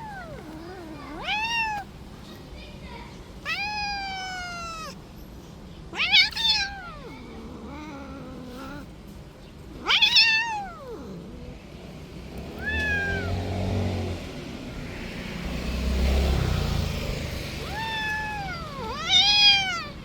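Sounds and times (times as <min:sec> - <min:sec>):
cat meowing: 0:00.0 - 0:02.0, 0:03.4 - 0:05.0, 0:05.9 - 0:08.9, 0:09.7 - 0:11.5, 0:12.4 - 0:13.8, 0:17.4 - 0:20.0.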